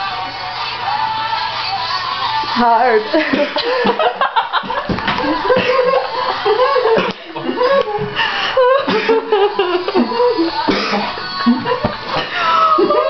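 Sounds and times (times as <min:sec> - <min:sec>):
people laughing: 0:03.1 - 0:13.0.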